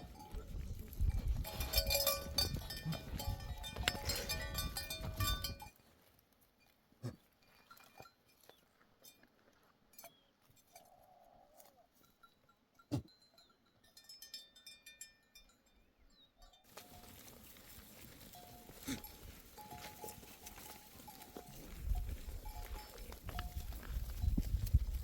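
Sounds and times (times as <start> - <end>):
sheep and goats bleating: 0.0 - 5.7, 16.7 - 25.0
animal bells clinking: 0.0 - 25.0.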